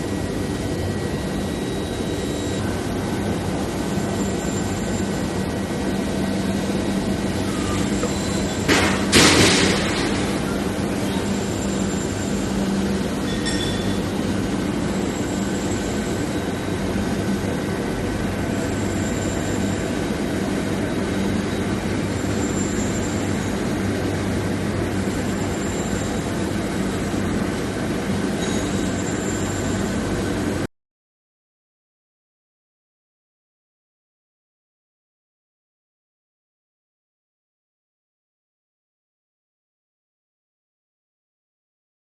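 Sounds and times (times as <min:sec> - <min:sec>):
faint high whines: 0:00.0 - 0:08.7
machinery rumble and hum: 0:00.0 - 0:30.7.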